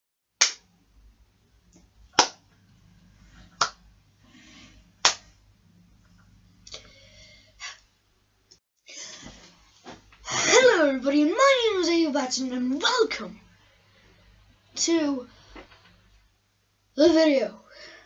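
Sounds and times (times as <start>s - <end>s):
sharp smacks: 0.4s - 0.7s, 2.1s - 2.4s, 5.0s - 5.3s.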